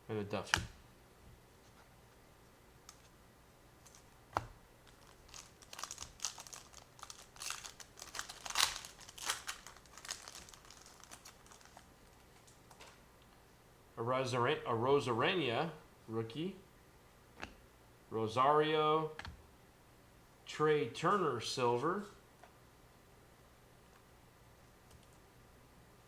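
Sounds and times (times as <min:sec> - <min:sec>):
plastic wrapper crinkling: 0:03.8 - 0:04.2, 0:04.8 - 0:13.0.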